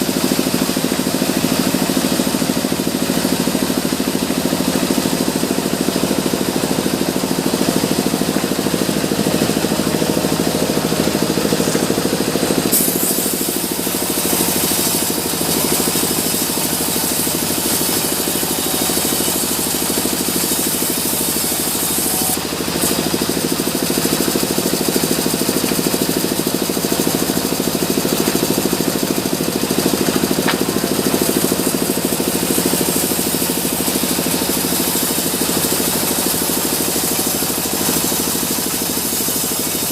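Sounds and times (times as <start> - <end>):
sawmill machinery humming: 0.0 - 39.9
saw blade cutting wood hiss: 8.6 - 29.2, 29.8 - 39.9.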